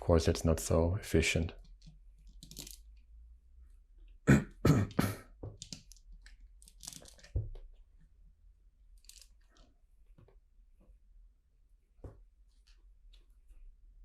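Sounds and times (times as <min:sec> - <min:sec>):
plastic toy bricks clicking: 0:01.6 - 0:03.0, 0:05.6 - 0:07.3, 0:09.0 - 0:09.7
man coughing: 0:04.3 - 0:05.3.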